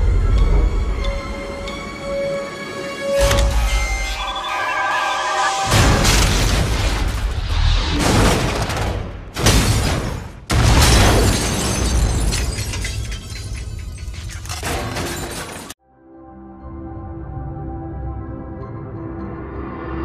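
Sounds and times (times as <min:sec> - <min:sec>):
dramatic film music: 0:00.0 - 0:09.4, 0:15.8 - 0:20.0
booming and crashing effects: 0:03.2 - 0:12.3.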